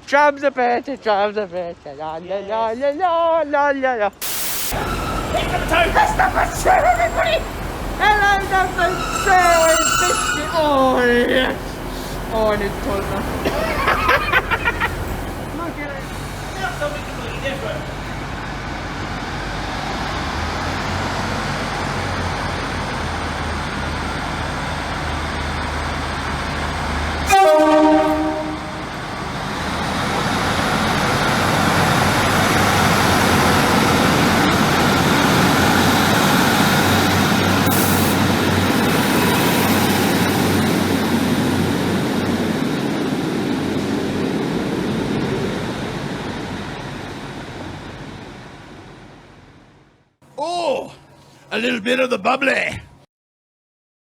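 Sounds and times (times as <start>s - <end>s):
vehicle running: 4.3s - 49.9s
vehicle horn blast: 4.7s - 7.4s, 8.0s - 11.2s, 27.3s - 28.9s.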